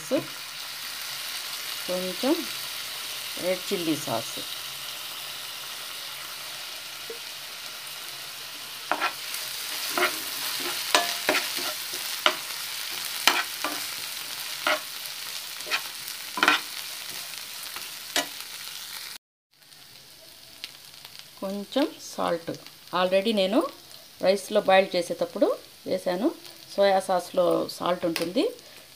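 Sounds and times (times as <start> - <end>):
vegetables sizzling in a pan: 0.0 - 28.9
spatula scraping a pan: 8.9 - 18.4.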